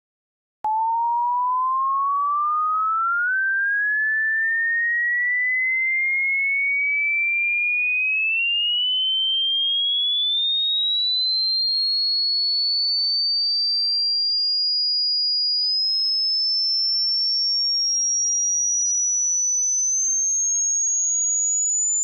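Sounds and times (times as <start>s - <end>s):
rising sine tone sweep: 0.7s - 6.1s.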